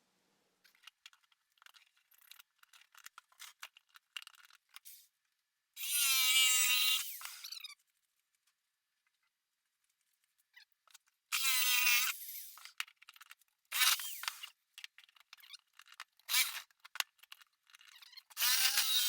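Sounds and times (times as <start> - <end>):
electric jigsaw whining: 18.4 - 19.0.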